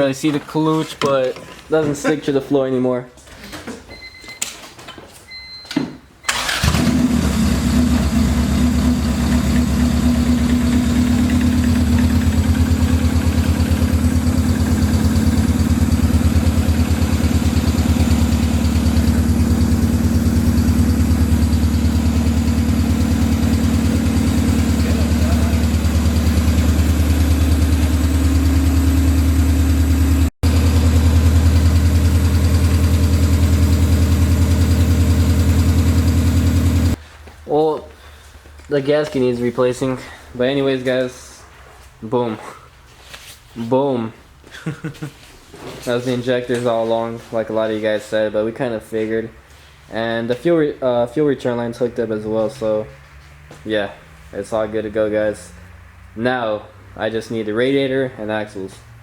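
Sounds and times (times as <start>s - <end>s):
car engine starting and idling: 6.2s - 37.0s.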